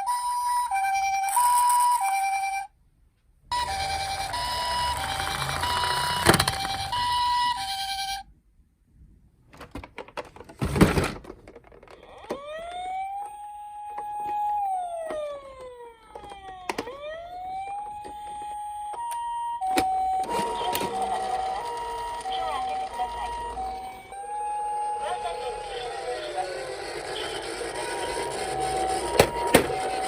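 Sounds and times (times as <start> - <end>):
toy siren wailing: 0.0 - 2.7, 3.5 - 8.2, 12.0 - 30.0
two-tone high-low siren: 3.5 - 8.2, 12.3 - 30.0.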